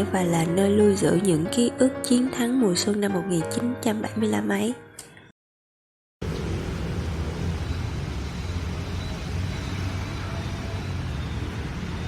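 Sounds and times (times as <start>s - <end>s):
distant road traffic rumble: 6.2s - 12.0s.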